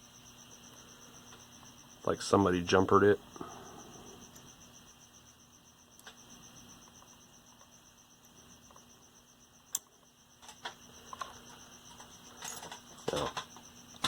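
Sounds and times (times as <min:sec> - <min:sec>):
radio hiss and hum: 0:00.6 - 0:05.0, 0:10.4 - 0:14.0.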